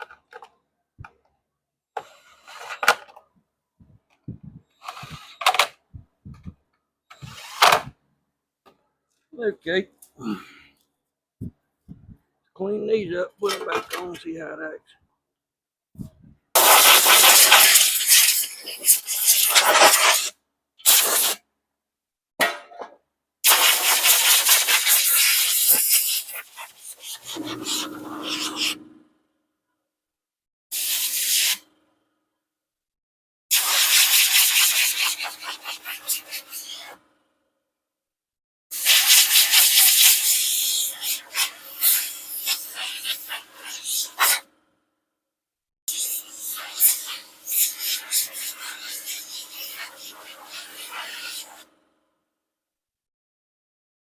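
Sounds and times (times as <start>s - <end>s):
spray hissing: 23.5s - 28.9s
scraping strokes on engine parts: 23.6s - 29.0s, 45.9s - 51.7s.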